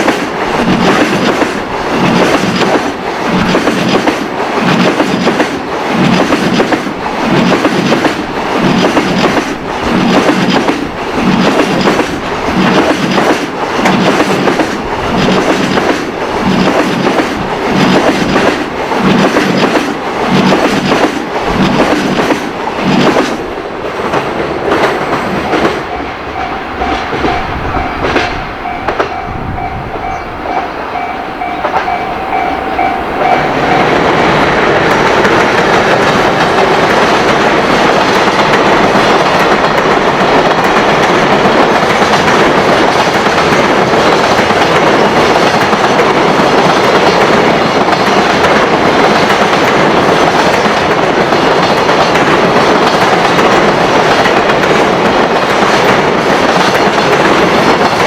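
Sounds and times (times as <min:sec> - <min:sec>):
train rumbling past: 0:00.0 - 0:58.0
train wheels clickety-clack: 0:00.0 - 0:58.0
level-crossing alarm bell: 0:25.1 - 0:34.4.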